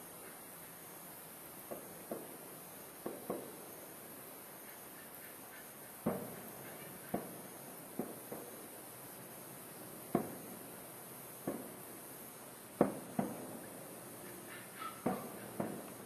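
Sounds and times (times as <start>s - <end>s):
steady high hiss: 0.0s - 16.0s
distant firework bangs: 6.0s - 8.7s, 10.0s - 10.7s, 11.4s - 11.9s, 12.8s - 16.0s.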